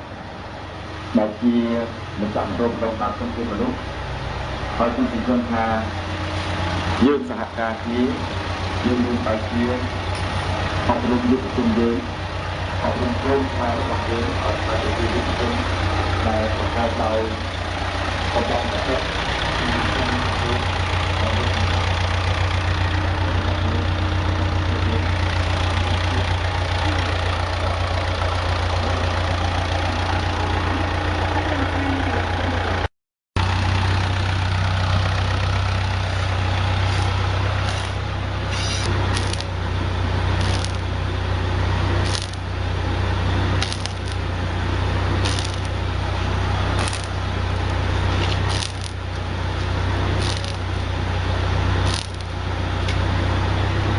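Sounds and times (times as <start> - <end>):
generator engine humming: 0.0 - 53.9
sharp clicks: 36.9 - 39.5, 40.4 - 40.9, 42.0 - 42.4, 43.6 - 44.2, 45.2 - 45.7, 46.8 - 47.2, 48.2 - 49.0, 50.2 - 50.7, 51.9 - 52.3.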